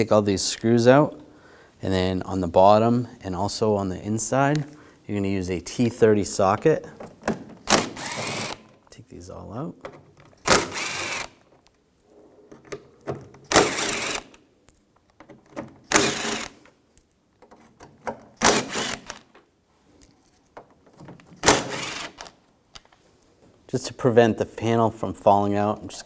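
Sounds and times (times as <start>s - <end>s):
power driver spinning out screws: 7.6s - 8.7s, 10.4s - 11.4s, 13.5s - 14.4s, 15.9s - 16.7s, 18.4s - 19.2s, 21.4s - 22.3s.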